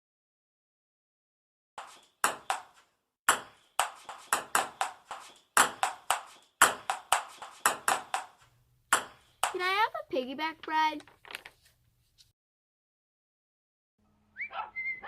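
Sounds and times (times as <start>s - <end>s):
ball bouncing: 1.8s - 9.8s.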